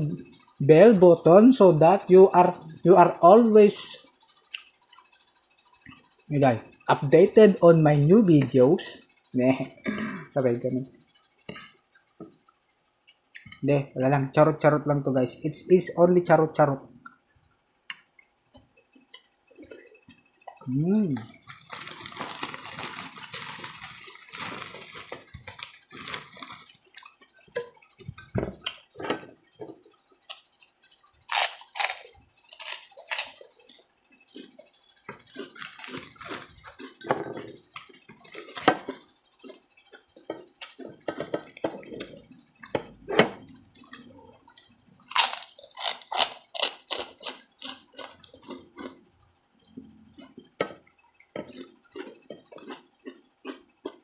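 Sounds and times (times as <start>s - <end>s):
person chewing and lip smacking: 4.4s - 5.0s, 19.0s - 49.0s, 51.2s - 54.0s.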